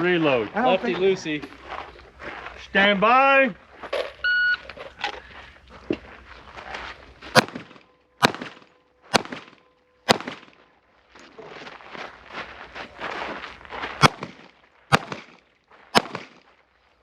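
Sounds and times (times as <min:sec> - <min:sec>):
shot timer beep: 0:04.2 - 0:04.6
pistol shots: 0:07.3 - 0:10.6, 0:14.0 - 0:16.5.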